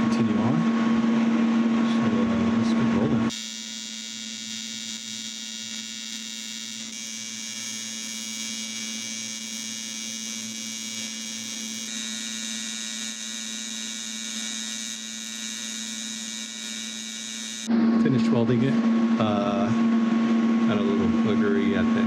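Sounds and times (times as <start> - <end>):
welding arc buzzing: 3.3 - 17.7.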